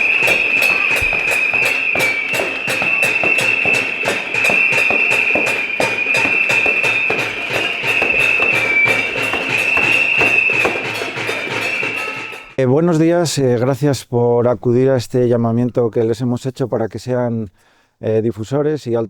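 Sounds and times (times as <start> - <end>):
pots and pans being banged: 0.0 - 12.6
shrill whistling: 0.0 - 12.6.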